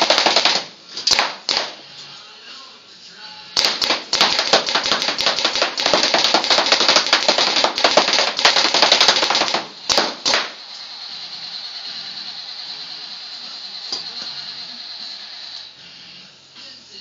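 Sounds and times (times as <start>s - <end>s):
paintball marker firing rapidly: 0.0s - 1.8s, 3.6s - 10.6s.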